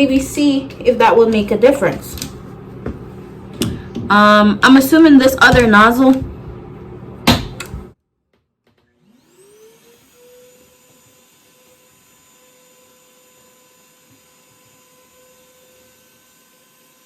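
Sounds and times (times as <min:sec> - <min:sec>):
hair dryer motor whine: 0:08.8 - 0:17.0.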